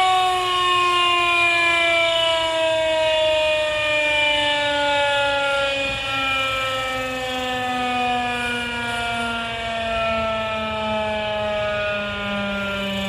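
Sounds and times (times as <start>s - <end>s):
warning siren test tone: 0.0s - 13.0s.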